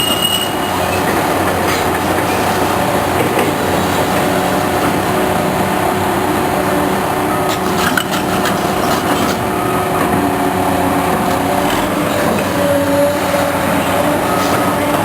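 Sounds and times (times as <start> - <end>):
excavator diesel engine running: 0.0 - 15.0
knocks and clatter: 7.5 - 10.2.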